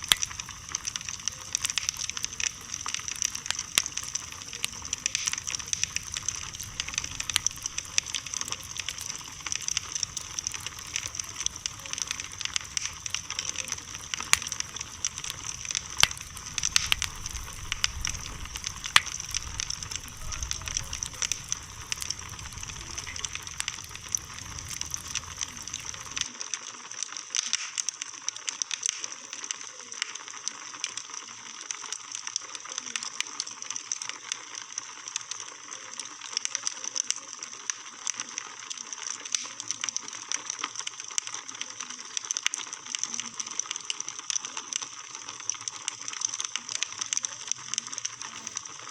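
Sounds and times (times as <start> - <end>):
low rumble: 0.0 - 26.3
wood bonfire crackling: 0.0 - 48.9.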